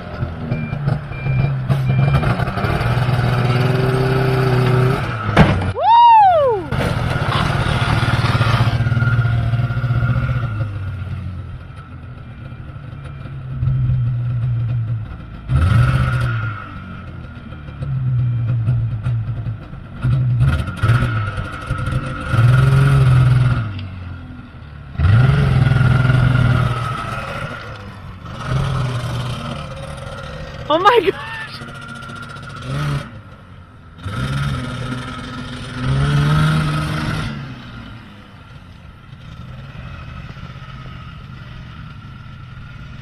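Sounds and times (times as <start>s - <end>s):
snowmobile engine revving: 1.9s - 10.7s, 25.0s - 33.2s, 34.0s - 38.0s.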